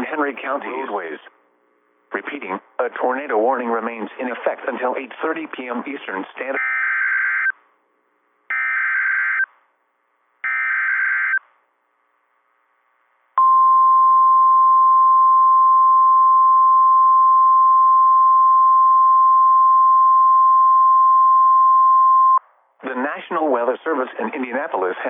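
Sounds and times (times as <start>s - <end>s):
faint radio hiss: 0.0s - 6.7s, 22.4s - 25.0s
steady warning alarm tone: 6.6s - 7.6s, 8.5s - 9.5s, 10.4s - 11.5s.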